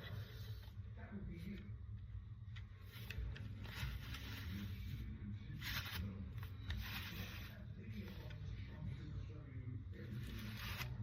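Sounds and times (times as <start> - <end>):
plastic scraping and rubbing: 2.8 - 8.4, 10.0 - 11.0.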